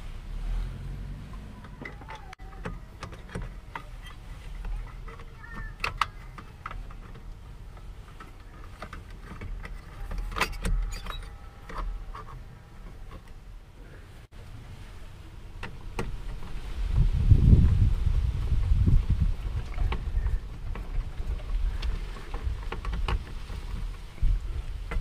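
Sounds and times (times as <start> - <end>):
squeaks and creaks: 0.4 - 14.0, 19.4 - 25.0.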